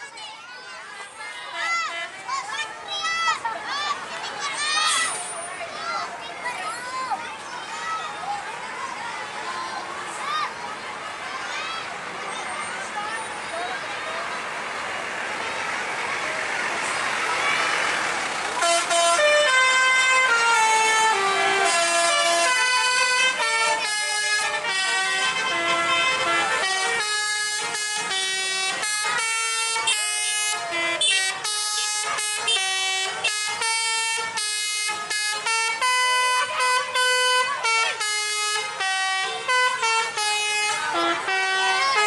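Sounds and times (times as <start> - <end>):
multi-tone bus air horns playing tunes: 18.0 - 42.0.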